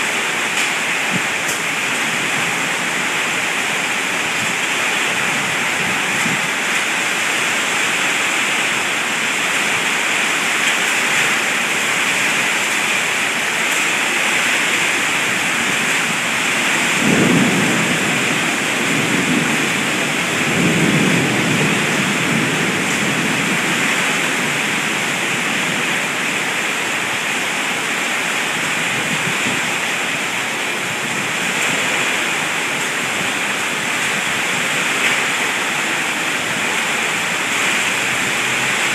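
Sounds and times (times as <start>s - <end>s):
heavy rain pouring: 0.0s - 38.9s
thunder rumbling: 14.4s - 26.2s.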